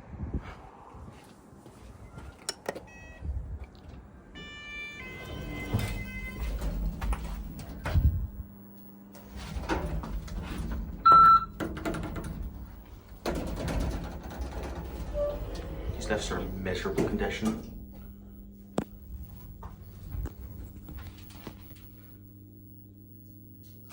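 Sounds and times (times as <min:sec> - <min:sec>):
lift humming: 0:01.9 - 0:23.9
lift doors sliding and thudding: 0:03.9 - 0:21.8
loud electronic beep: 0:04.4 - 0:06.4.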